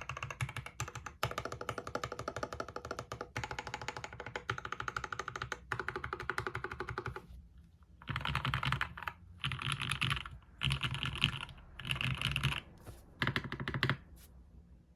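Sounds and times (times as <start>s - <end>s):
fast typing on mechanical keyboard: 0.0s - 7.2s, 8.0s - 14.0s.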